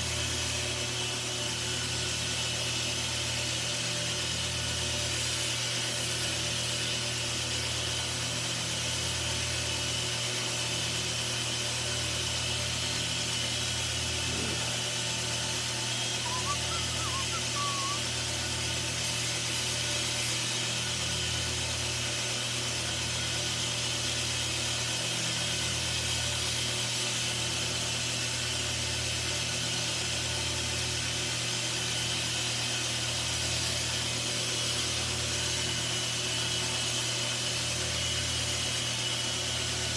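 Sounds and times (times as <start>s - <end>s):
faint chirp: 16.2s - 18.1s.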